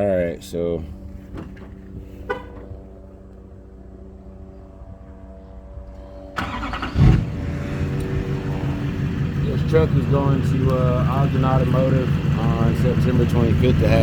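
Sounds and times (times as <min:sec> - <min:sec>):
truck engine starting and running: 0:06.3 - 0:14.0.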